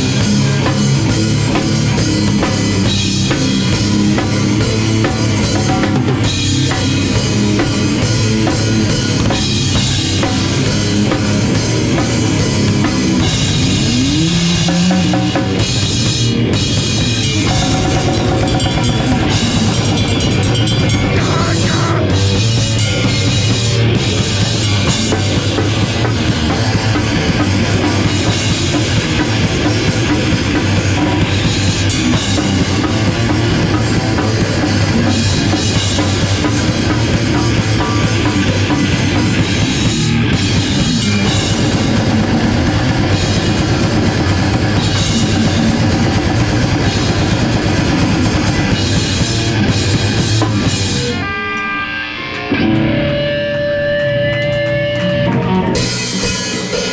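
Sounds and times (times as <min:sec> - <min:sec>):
heavy bass drum: 0:00.0 - 0:51.2
live rock band playing: 0:00.0 - 0:56.9
sustained guitar notes: 0:16.4 - 0:56.9.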